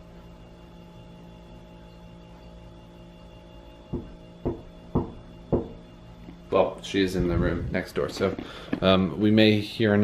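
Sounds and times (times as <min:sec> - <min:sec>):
low room hum: 0:00.0 - 0:10.0
knuckles knocking on wall: 0:03.9 - 0:05.8.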